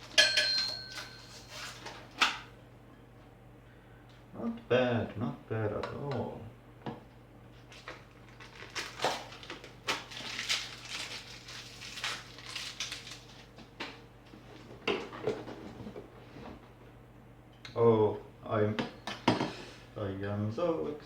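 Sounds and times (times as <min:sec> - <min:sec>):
packing material rustling: 0:07.7 - 0:13.5.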